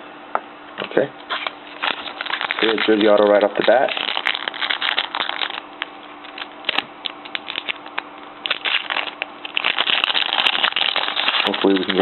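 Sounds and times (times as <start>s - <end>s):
wrapper crinkling: 1.3s - 12.0s.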